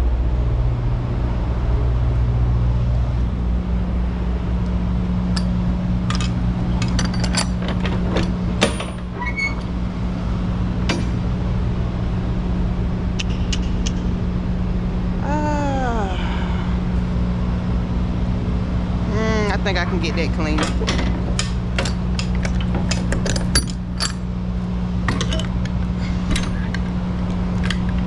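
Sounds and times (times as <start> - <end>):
diesel engine idling: 0.0 - 28.0
metal latches clinking and clanking: 5.3 - 9.8, 10.8 - 11.2, 19.8 - 24.3, 25.0 - 28.0.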